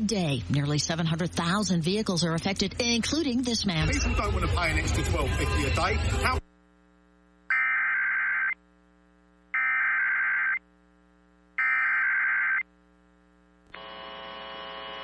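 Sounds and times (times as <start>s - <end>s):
harsh buzzing data tone bursts: 7.4s - 8.8s, 9.4s - 10.8s, 11.5s - 15.0s.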